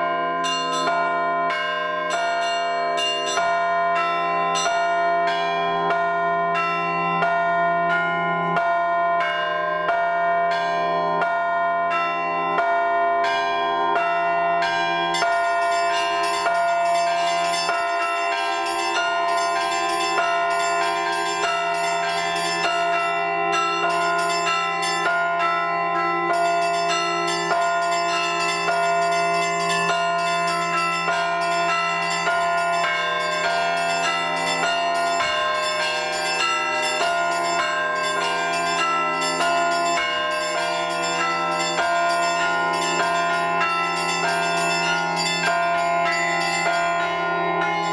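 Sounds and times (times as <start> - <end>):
low sustained bell tone: 0.0 - 47.9
small bells pealing: 14.0 - 47.9.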